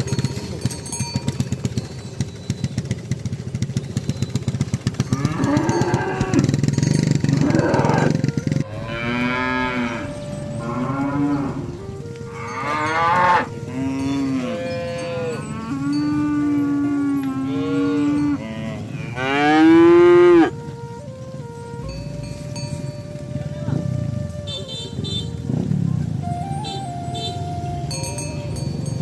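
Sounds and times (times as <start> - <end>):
cattle mooing: 5.1 - 20.5.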